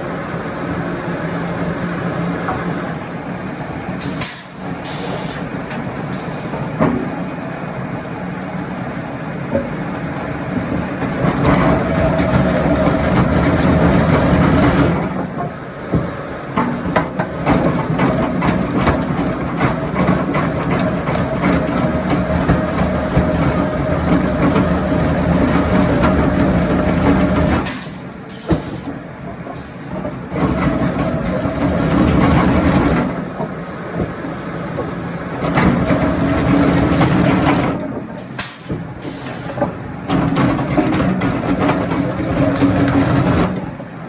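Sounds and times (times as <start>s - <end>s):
wood-processing machinery drone: 0.0s - 44.0s
knocks and clatter: 10.5s - 27.8s, 34.8s - 43.8s.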